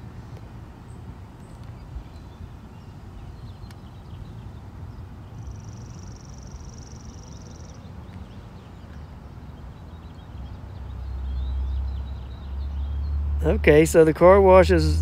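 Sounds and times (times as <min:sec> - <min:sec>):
small birds chirping: 0:00.9 - 0:15.0
wind rumbling on microphone: 0:14.7 - 0:15.0.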